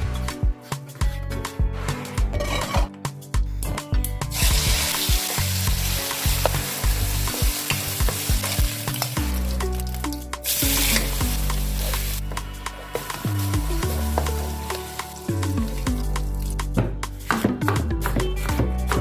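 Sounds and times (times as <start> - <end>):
food sizzling in hot oil: 4.3 - 16.1.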